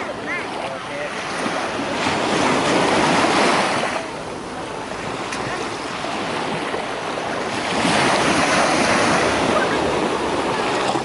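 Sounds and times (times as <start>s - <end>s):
sea waves washing: 0.0s - 11.0s
wind buffeting microphone: 0.0s - 11.0s.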